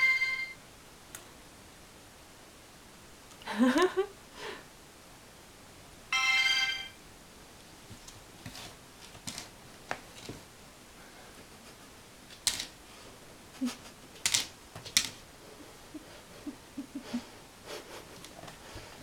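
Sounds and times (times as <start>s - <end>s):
claws clicking on hard floor: 8.0s - 10.4s, 12.3s - 12.8s, 14.1s - 15.2s.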